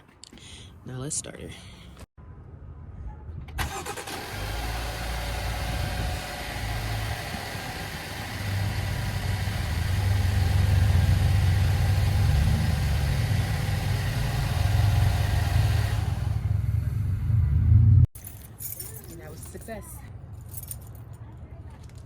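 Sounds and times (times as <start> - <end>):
car engine cranking and running: 3.6 - 17.9.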